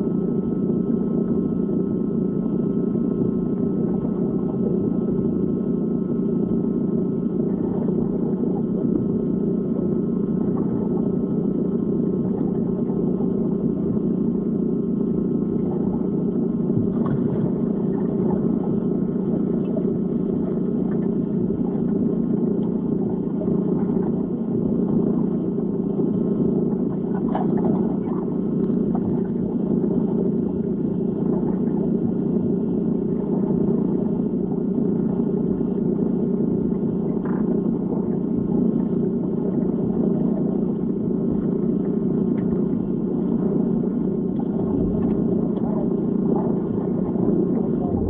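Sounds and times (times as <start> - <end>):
muffled underwater rumble: 0.0 - 48.0
faint bubble ticks: 42.3 - 42.6.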